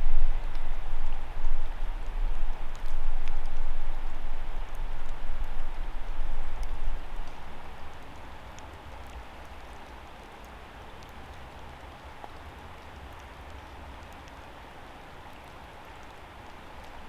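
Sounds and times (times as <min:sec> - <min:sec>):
low rumble: 0:00.0 - 0:08.1
steady rain falling: 0:00.0 - 0:17.0.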